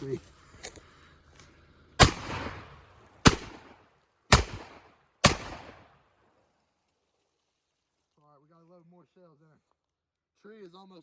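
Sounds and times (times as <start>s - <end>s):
shotgun blasts: 2.0s - 6.0s.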